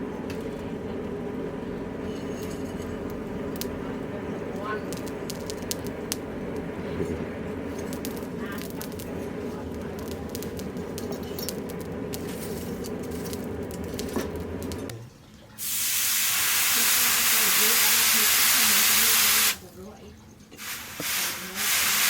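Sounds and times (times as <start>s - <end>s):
low workshop noise: 0.0s - 22.0s
loud steady hiss: 15.6s - 19.6s, 20.6s - 22.0s.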